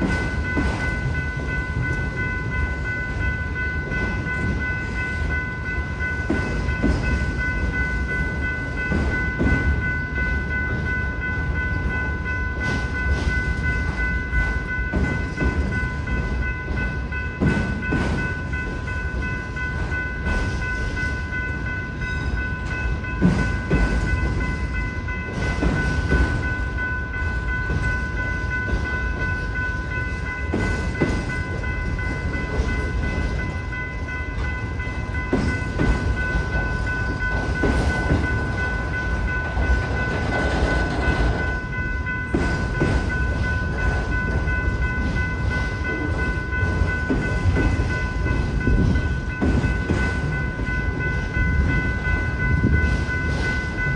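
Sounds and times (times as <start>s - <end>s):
freight train rumbling: 0.0s - 53.9s
wheels clacking over rail joints: 25.1s - 53.9s.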